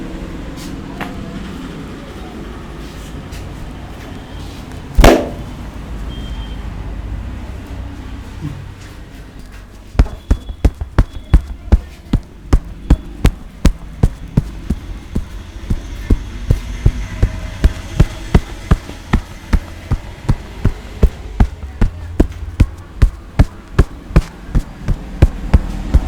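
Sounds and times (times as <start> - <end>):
hands slapping in rhythm: 5.0 - 5.4, 10.0 - 15.4, 16.1 - 26.0.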